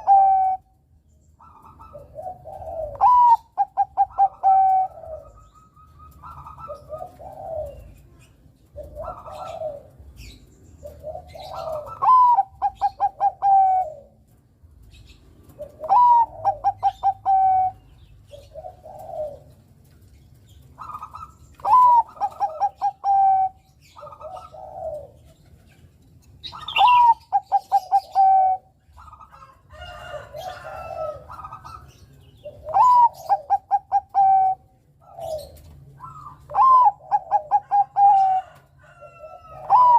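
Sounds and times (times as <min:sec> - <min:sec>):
dove singing: 0:00.0 - 0:39.9
soft low dove coos: 0:01.5 - 0:10.2, 0:15.5 - 0:19.7, 0:20.8 - 0:25.6, 0:32.5 - 0:39.9.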